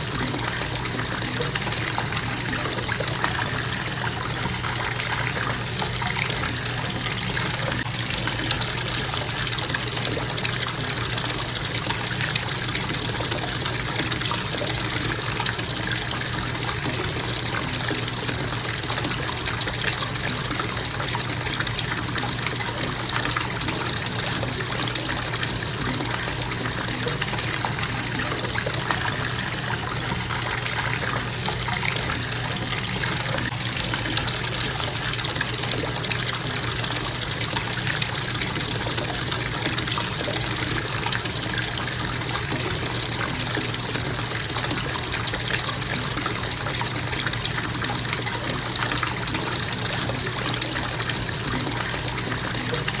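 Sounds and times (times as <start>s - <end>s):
bathtub faucet running: 0.0s - 53.0s
water splashing into tub: 0.0s - 53.0s.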